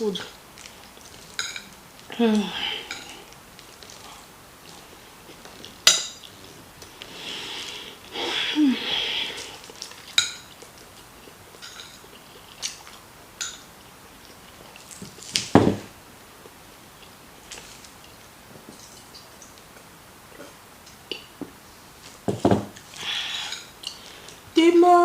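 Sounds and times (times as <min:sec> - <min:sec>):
cutlery clinking on a plate: 0:11.6 - 0:12.0.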